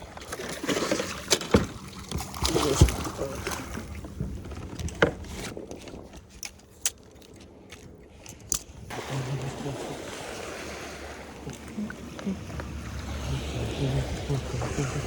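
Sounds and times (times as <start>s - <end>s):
water wash: 0.0s - 4.2s, 8.9s - 15.0s.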